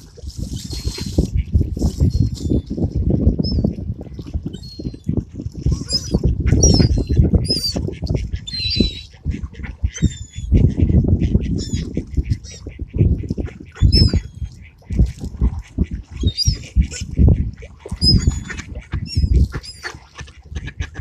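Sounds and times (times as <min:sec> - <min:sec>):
birds squawking: 0:05.8 - 0:07.8, 0:08.4 - 0:09.1.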